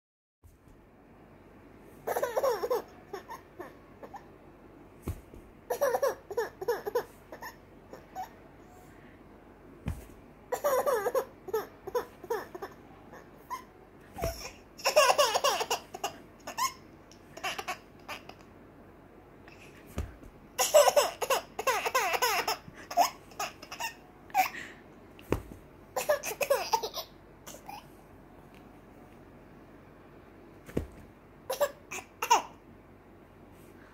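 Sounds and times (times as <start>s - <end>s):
baby giggling: 2.1s - 4.3s, 5.7s - 8.4s, 10.5s - 18.4s, 20.6s - 24.6s, 26.0s - 27.8s, 31.5s - 32.5s
dull thumps: 5.0s - 5.6s, 9.8s - 10.2s, 19.9s - 20.4s, 25.2s - 25.7s, 30.6s - 31.1s.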